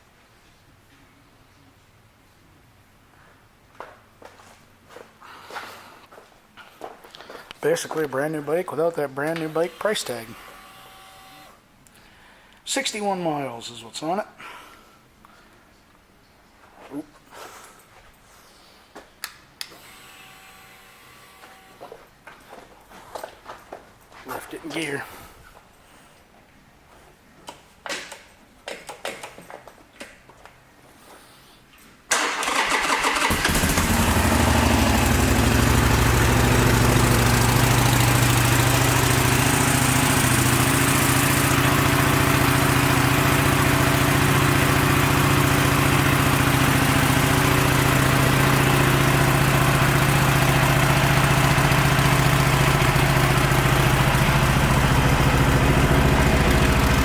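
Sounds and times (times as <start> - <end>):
motorcycle engine starting and idling: 32.1 - 57.0.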